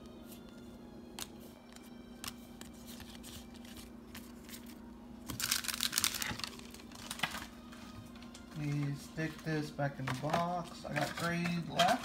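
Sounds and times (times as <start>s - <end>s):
low steady hum: 0.0s - 12.0s
cards being handled: 0.2s - 12.0s
foil wrapper tearing: 5.3s - 7.5s.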